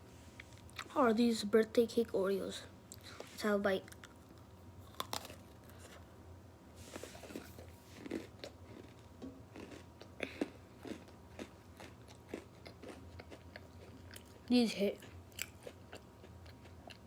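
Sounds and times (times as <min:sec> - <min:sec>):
crunchy cookie chewing: 0:02.9 - 0:06.2, 0:06.8 - 0:17.0.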